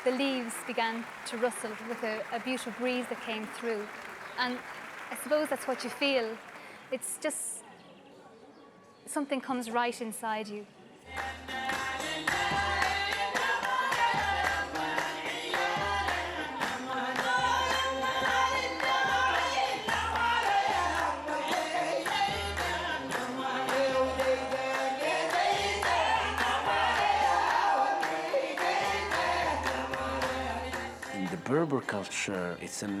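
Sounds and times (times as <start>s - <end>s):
clapping or hand percussion: 0.0s - 7.0s, 11.1s - 32.0s
group singing: 11.1s - 31.6s.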